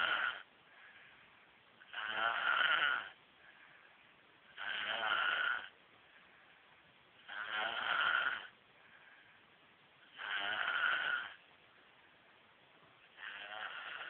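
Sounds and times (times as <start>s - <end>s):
person snoring: 0.0s - 0.5s, 1.9s - 3.2s, 4.5s - 5.7s, 7.2s - 8.5s, 10.1s - 11.4s, 13.1s - 14.0s.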